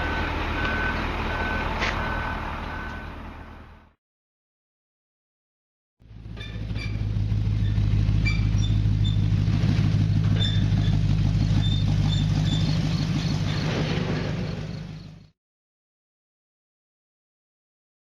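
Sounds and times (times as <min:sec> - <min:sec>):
vehicle engine droning: 0:00.0 - 0:04.0, 0:06.0 - 0:15.4.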